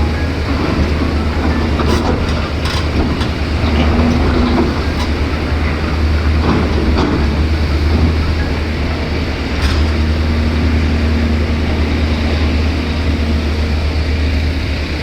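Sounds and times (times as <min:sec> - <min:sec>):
excavator diesel engine rumbling: 0:00.0 - 0:15.0
bucket clanking and scraping rock: 0:00.5 - 0:08.4, 0:09.6 - 0:10.2.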